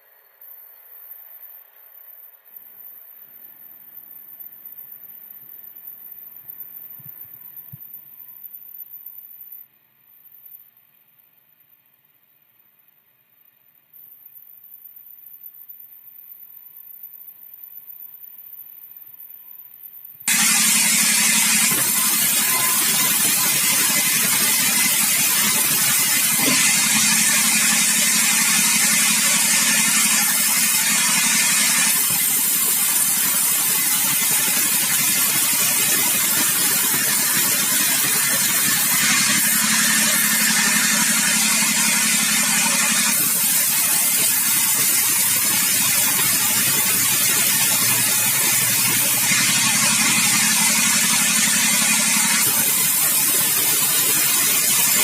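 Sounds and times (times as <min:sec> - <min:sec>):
sawmill machinery sawing wood: 0:20.3 - 0:55.0.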